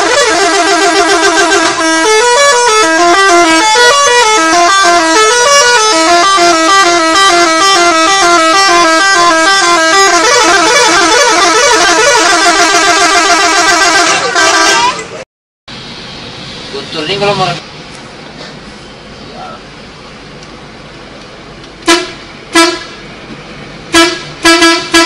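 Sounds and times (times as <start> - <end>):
multi-tone musical bus horn: 0.0 - 15.2, 21.8 - 23.0, 23.9 - 25.0.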